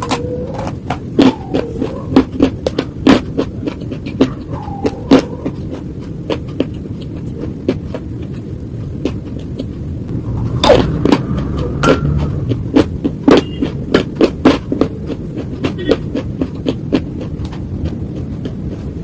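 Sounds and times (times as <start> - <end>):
low mouth rumble: 0.0 - 7.7
slate being chewed: 0.0 - 19.0.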